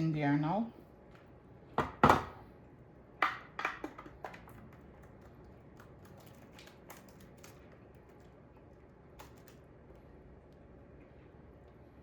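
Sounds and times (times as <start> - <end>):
utensil knocking on mixing bowl: 1.8 - 2.4.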